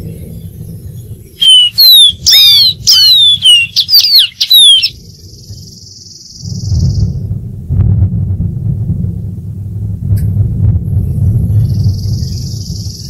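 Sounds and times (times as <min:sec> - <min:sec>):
low rumble: 0:00.0 - 0:04.0, 0:06.4 - 0:13.0
bird singing sharp whistled notes: 0:01.4 - 0:05.0.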